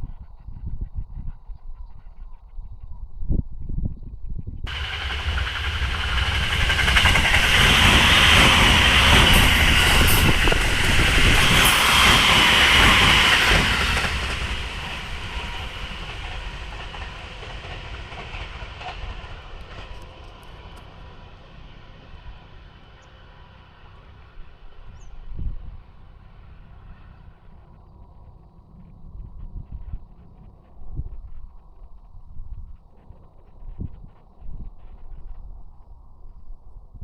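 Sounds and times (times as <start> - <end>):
wheels running on rails: 4.7 - 21.0
electric train passing at speed: 4.7 - 31.4.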